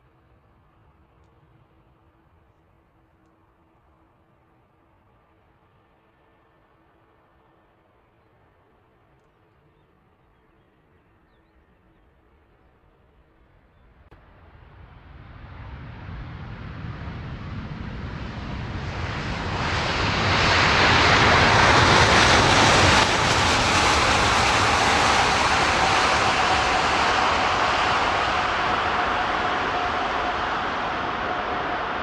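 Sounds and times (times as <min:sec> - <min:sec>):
jet engines whining: 0:15.5 - 0:32.0.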